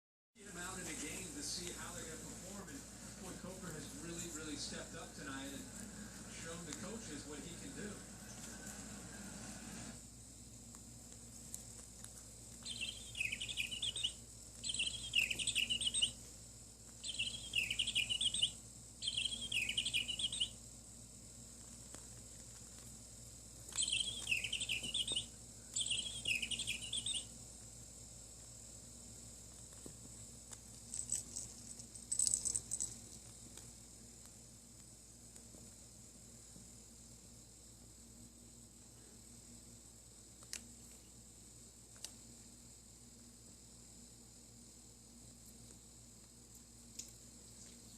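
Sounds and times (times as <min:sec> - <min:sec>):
bird-like warbling chirps: 0:12.7 - 0:16.2, 0:17.0 - 0:20.6, 0:23.8 - 0:27.3.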